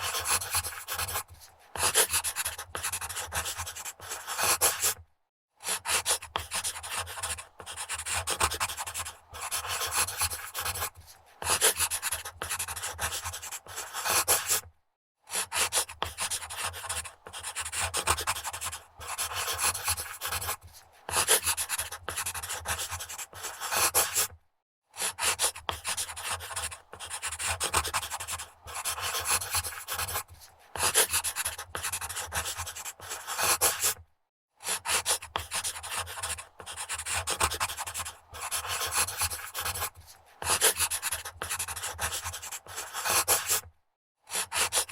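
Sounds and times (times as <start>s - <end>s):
pencil scribbling on paper: 0.0s - 5.0s, 5.6s - 34.0s, 34.6s - 44.9s.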